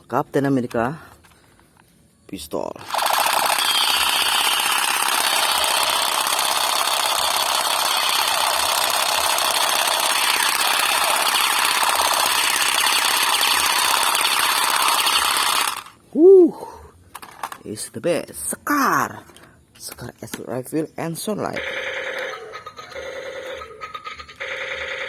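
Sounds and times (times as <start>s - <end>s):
toy pistol rapid rattle: 2.8s - 16.0s, 17.1s - 17.6s, 21.6s - 25.0s.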